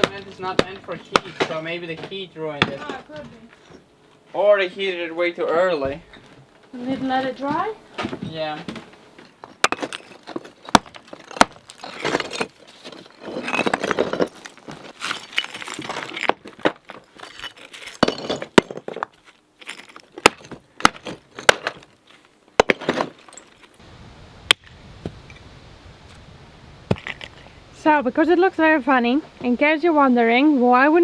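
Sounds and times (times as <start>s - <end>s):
brick striking brick: 0.0s - 1.6s, 9.6s - 12.5s, 15.5s - 21.9s, 22.6s - 23.4s, 26.9s - 27.4s
scraping gritty rubble: 9.3s - 23.8s, 26.9s - 27.6s.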